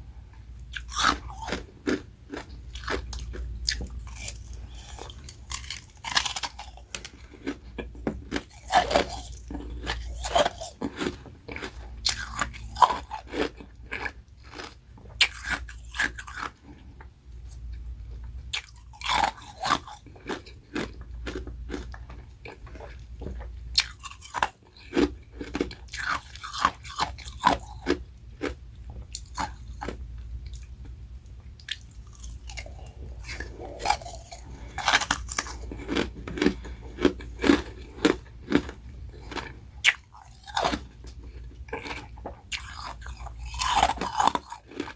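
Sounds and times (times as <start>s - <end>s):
steady low hum: 0.0s - 44.9s
person crunching ice: 4.1s - 6.8s, 8.3s - 16.5s, 32.1s - 40.8s, 41.8s - 44.9s.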